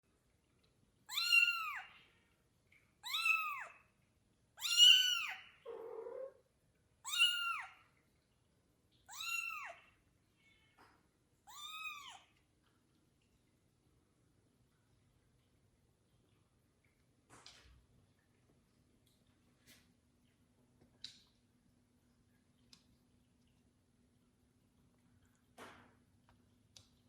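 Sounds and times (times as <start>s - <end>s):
kitten meowing: 1.1s - 1.8s, 3.0s - 3.7s, 4.6s - 6.4s, 7.0s - 7.7s, 9.1s - 9.8s, 11.5s - 12.2s
low rough animal sound: 5.6s - 6.4s.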